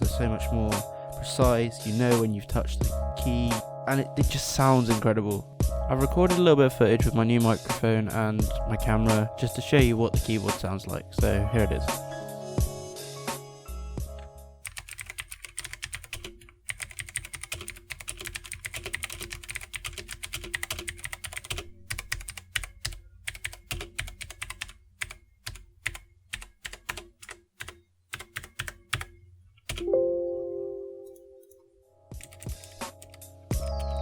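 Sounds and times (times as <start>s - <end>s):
music: 0.0s - 24.6s, 28.2s - 34.0s
mechanical keyboard typing: 14.6s - 29.9s, 32.2s - 33.9s.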